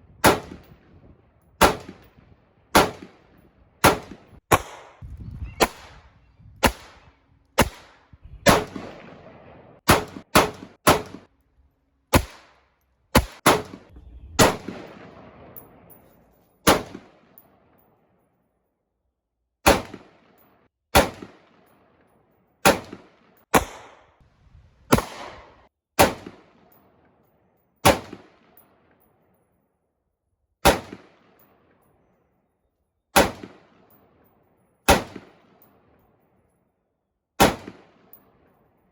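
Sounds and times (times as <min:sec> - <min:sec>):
gunshots with echo: 0:03.8 - 0:05.0, 0:08.5 - 0:11.2, 0:13.2 - 0:15.9, 0:22.6 - 0:24.0.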